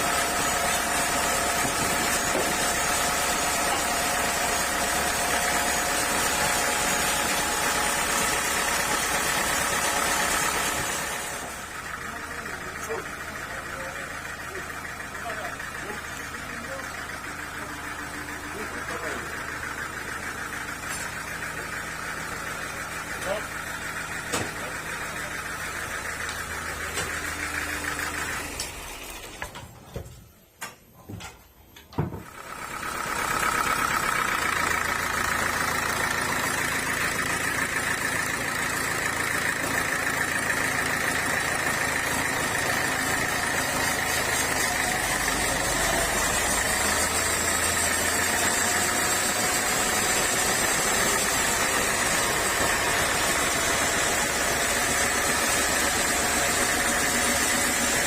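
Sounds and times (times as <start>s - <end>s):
sawmill machinery whirring: 0.0s - 30.0s, 32.0s - 58.0s.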